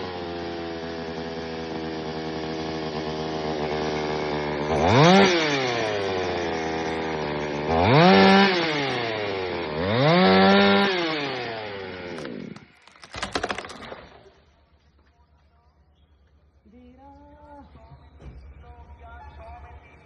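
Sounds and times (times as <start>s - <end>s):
chainsaw revving: 0.0s - 14.6s
rattling clicks: 12.1s - 14.2s.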